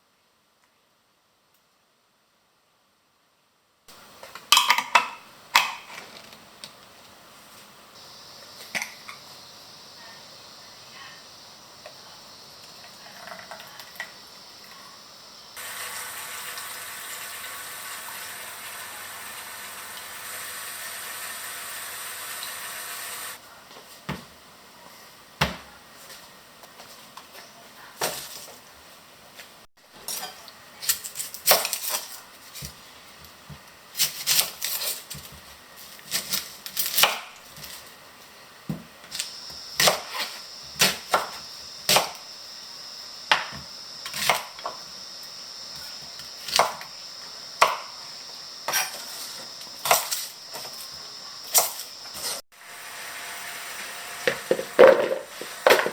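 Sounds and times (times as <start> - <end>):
dishes clattering: 54.3 - 55.9.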